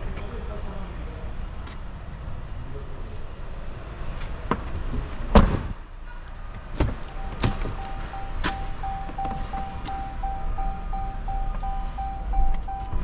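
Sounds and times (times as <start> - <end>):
sharp knocks: 6.6 - 10.2
repeating electronic beep: 7.1 - 13.0.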